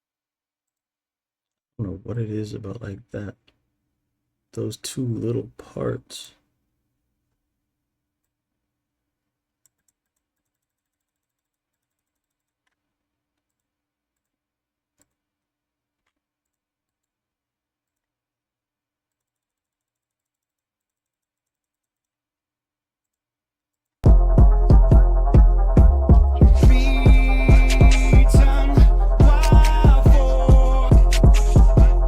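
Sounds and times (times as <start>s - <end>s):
keyboard clicks: 9.6s - 14.4s, 15.0s - 15.4s, 19.1s - 22.1s
computer mouse clicks: 9.6s - 17.2s, 17.8s - 18.2s, 19.1s - 22.2s.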